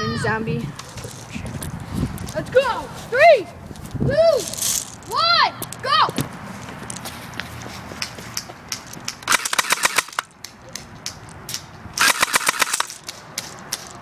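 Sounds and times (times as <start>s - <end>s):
airsoft gun firing bursts: 9.2s - 10.3s, 12.0s - 13.6s.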